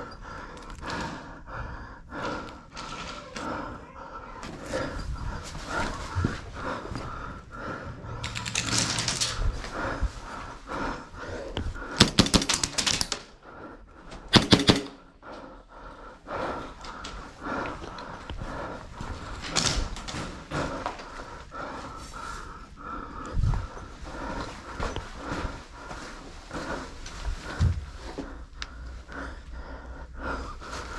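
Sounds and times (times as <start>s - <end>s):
airsoft guns firing bursts: 12.0s - 13.1s, 14.3s - 15.0s
knocks and clicks: 12.0s - 13.2s, 14.3s - 15.0s.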